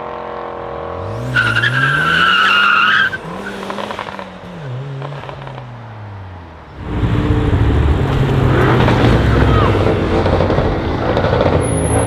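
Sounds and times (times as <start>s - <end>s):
car engine accelerating hard: 0.0s - 12.0s
tyres squealing: 1.3s - 3.7s, 6.8s - 12.0s
loud rush of noise: 6.8s - 12.0s.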